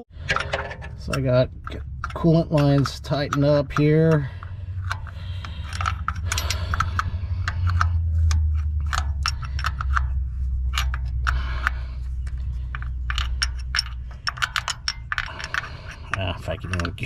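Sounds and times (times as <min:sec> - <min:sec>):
steady low rumble: 0:00.0 - 0:17.0
hand tools clinking on metal: 0:00.3 - 0:07.8, 0:12.6 - 0:17.0.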